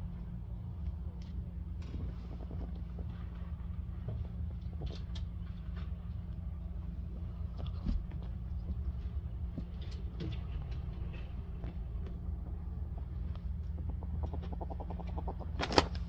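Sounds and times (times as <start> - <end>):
low rumble: 0.0 - 15.5
ferrets chuckling: 13.6 - 15.8.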